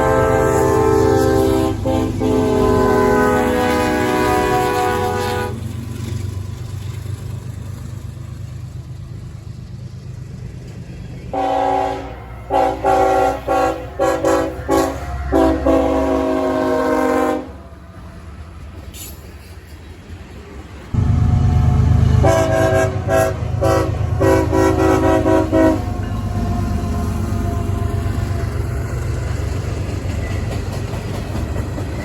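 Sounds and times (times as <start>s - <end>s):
locomotive air horn blasts: 0.0s - 5.6s, 11.3s - 17.8s, 21.0s - 28.4s
passing diesel train rumble: 0.0s - 32.0s.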